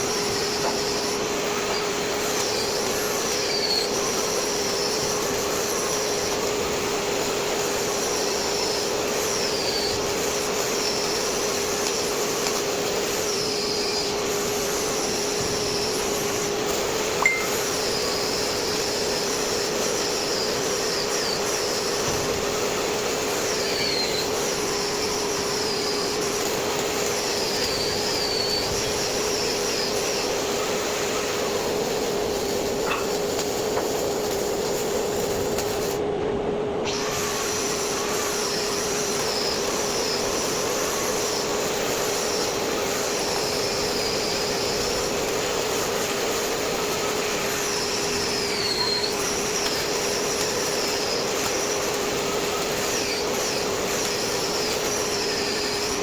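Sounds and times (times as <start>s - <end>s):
faint high chirps: 17.2s - 17.7s.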